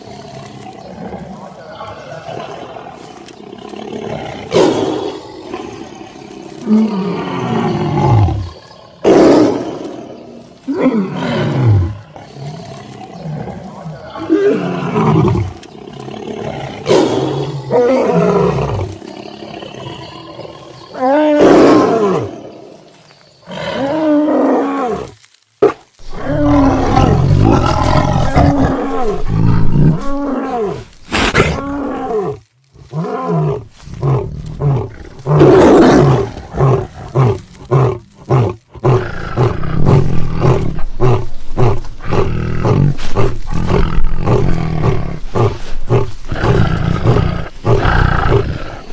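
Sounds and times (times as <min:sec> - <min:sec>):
large animal roaring: 0:26.0 - 0:32.4.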